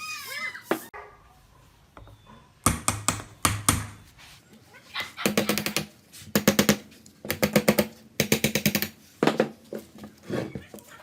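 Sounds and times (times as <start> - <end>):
power tool hammering: 2.6 - 4.0.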